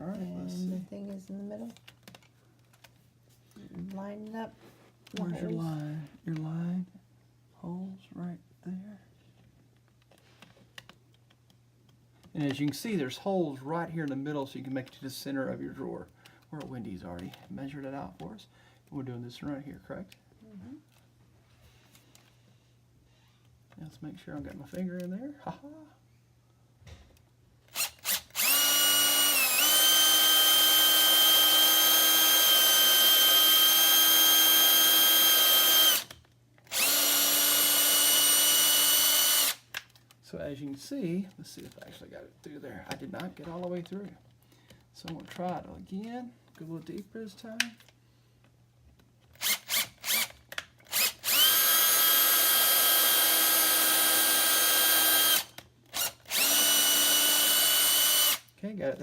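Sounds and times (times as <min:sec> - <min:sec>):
electric drill boring wood: 0:27.7 - 0:39.6, 0:49.4 - 0:50.3, 0:50.9 - 0:58.4.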